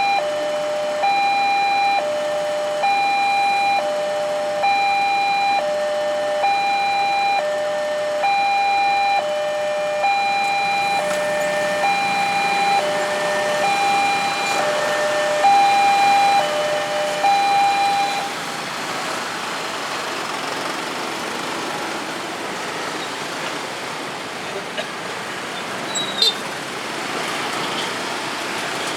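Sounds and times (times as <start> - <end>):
level crossing alarm two tones: 0.0 - 18.4
passing traffic rushing: 0.0 - 28.9.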